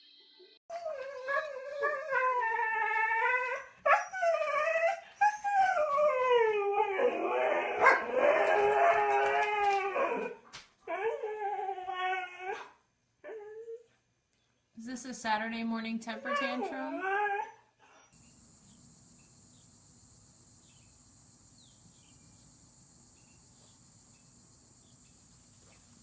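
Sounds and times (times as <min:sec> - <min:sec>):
dog howling: 0:00.7 - 0:13.8, 0:16.3 - 0:17.6.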